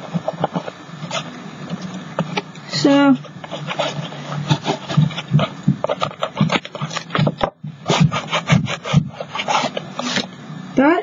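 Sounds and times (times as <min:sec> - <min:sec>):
paint stick rubbing on canvas: 0:03.2 - 0:10.3.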